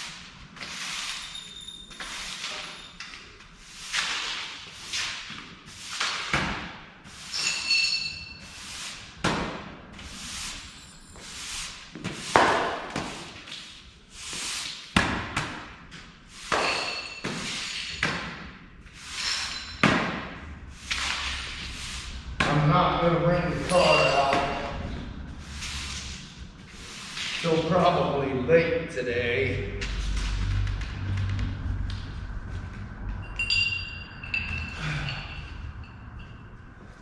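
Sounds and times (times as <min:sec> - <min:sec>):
broom sweeping floor: 0:00.0 - 0:15.0, 0:15.6 - 0:28.4
metallic ping: 0:33.2 - 0:36.5.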